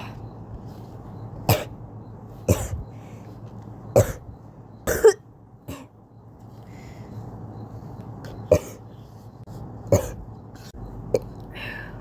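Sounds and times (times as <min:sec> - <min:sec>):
person coughing: 0:01.5 - 0:01.8, 0:02.5 - 0:02.8, 0:04.0 - 0:04.2, 0:04.9 - 0:05.9, 0:08.5 - 0:08.8, 0:09.9 - 0:10.2.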